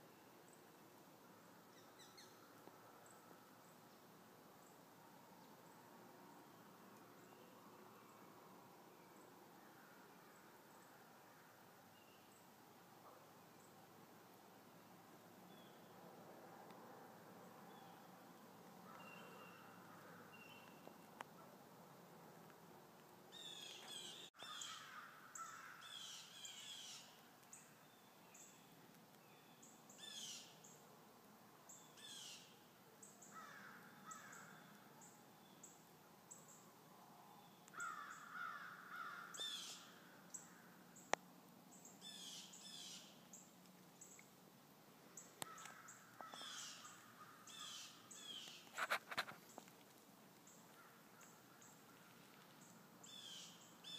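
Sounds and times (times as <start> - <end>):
wild birds calling: 45.2 - 49.3.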